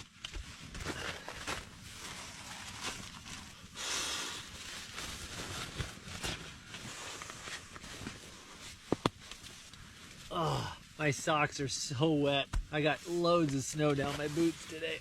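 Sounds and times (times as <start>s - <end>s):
rustling and small knocks: 0.0s - 3.6s, 4.9s - 10.3s.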